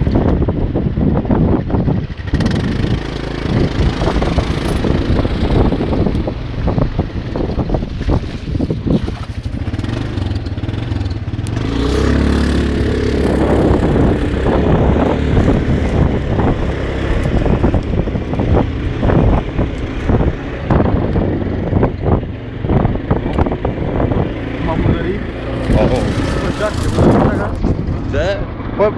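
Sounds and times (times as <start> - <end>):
atv engine revving: 0.0 - 28.9
rattling and clattering: 2.2 - 28.8.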